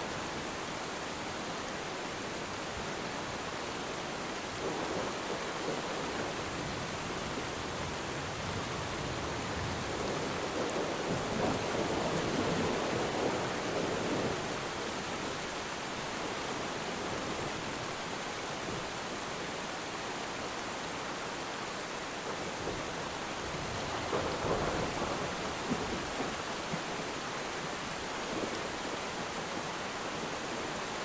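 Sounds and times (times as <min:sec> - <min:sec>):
rain falling on water: 0:00.0 - 0:31.0
distant thunder rumbling: 0:07.9 - 0:14.5, 0:22.3 - 0:27.0.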